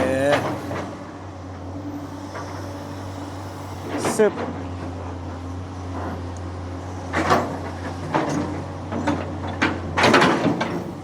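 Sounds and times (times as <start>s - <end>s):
excavator bucket clanking: 7.1s - 11.0s.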